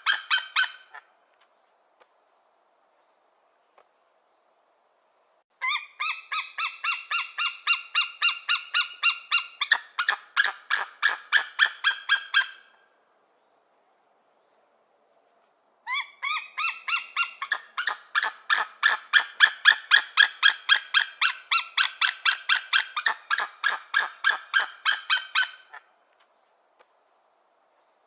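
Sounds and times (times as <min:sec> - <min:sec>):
eagle calling: 0:00.0 - 0:01.1, 0:05.6 - 0:12.8, 0:15.9 - 0:25.9.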